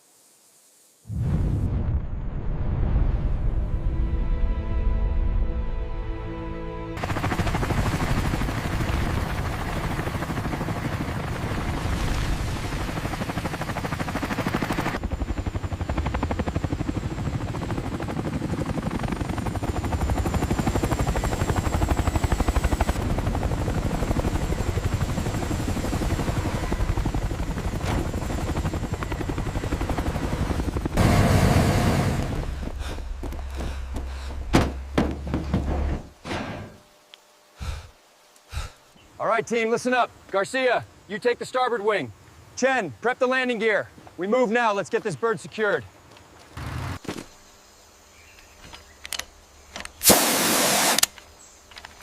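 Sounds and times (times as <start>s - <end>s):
helicopter rotor chop: 7.0s - 34.9s.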